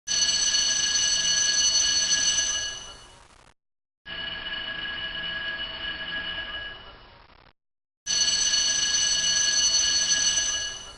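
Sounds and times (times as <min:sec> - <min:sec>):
alarm ringing shrill tone: 0:00.1 - 0:03.2, 0:04.1 - 0:07.1, 0:08.1 - 0:10.9.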